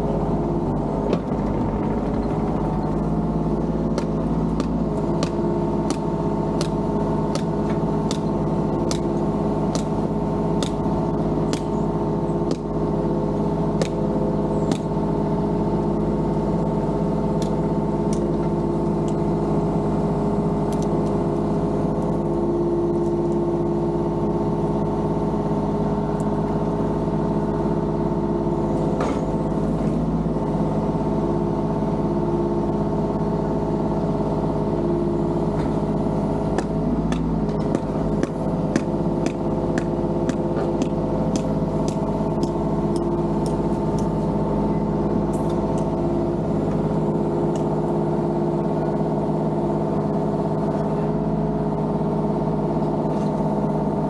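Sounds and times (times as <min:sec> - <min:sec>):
engine running steadily: 0:00.0 - 0:54.0.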